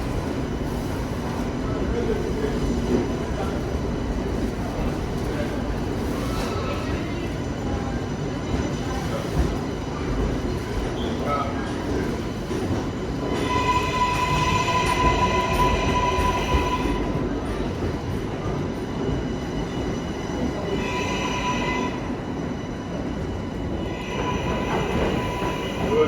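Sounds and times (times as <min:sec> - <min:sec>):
subway train rumbling: 0:00.0 - 0:26.0
train wheels squealing: 0:10.8 - 0:12.0, 0:13.2 - 0:22.5, 0:23.7 - 0:26.0.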